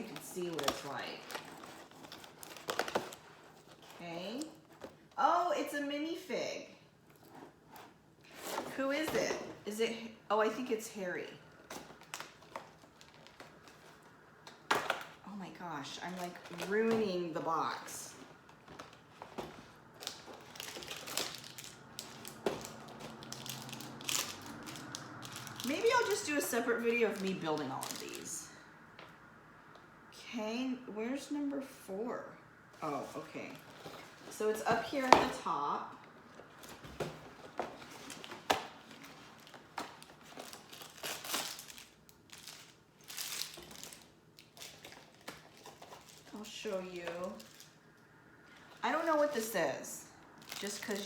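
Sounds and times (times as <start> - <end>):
cardboard crinkling and tearing: 0.0 - 5.1, 11.6 - 14.1, 16.0 - 28.3, 36.4 - 47.8.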